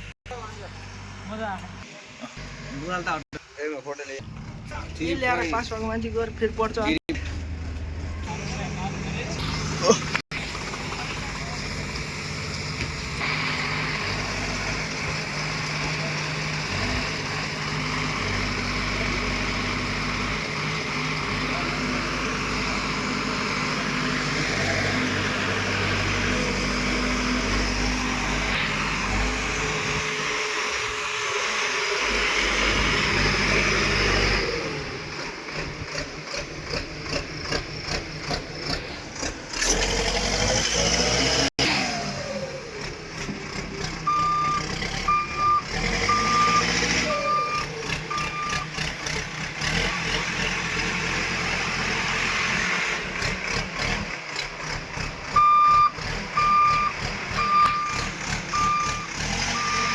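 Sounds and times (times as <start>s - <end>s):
heavy machinery engines running: 0.0s - 3.2s, 4.2s - 59.9s
reversing alarm beeping: 44.1s - 48.7s, 55.4s - 59.9s.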